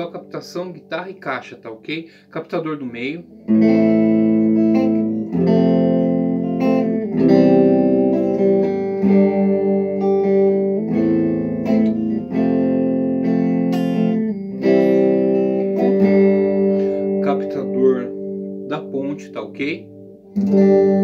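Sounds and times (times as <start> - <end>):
electric guitar strummed chords: 0.0 - 21.0.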